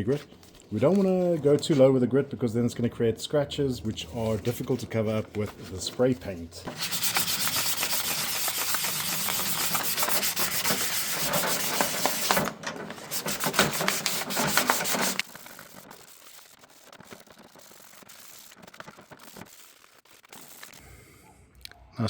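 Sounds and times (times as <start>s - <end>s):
sandpaper rubbing on plastic: 6.6s - 20.8s.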